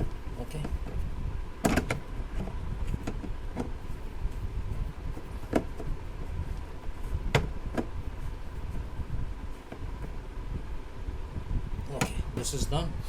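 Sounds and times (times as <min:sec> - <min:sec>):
low steady rumble: 0:00.0 - 0:13.0.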